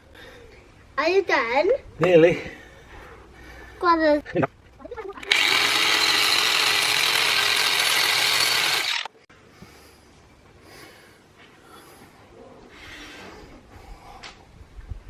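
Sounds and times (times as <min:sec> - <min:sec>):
power tool grinding metal rim: 0:05.2 - 0:09.1.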